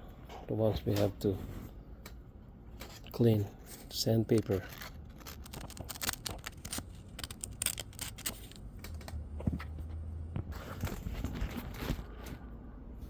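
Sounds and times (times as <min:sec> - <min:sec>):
small plastic parts clicking: 0:04.2 - 0:09.2
sandpaper rustling: 0:04.3 - 0:08.6.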